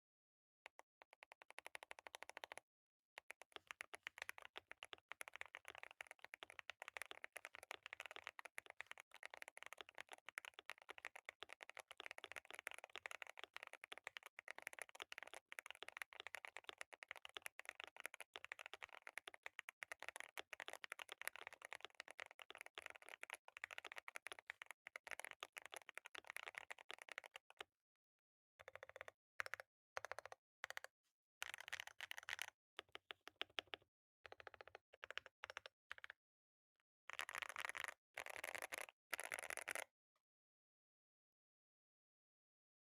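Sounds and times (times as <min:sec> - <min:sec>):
mechanical keyboard typing: 0:37.1 - 0:39.9.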